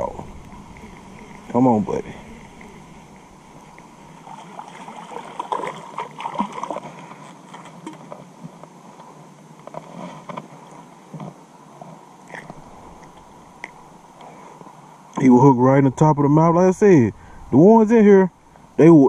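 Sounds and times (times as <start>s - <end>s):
water splashing and sloshing: 0.0s - 14.4s.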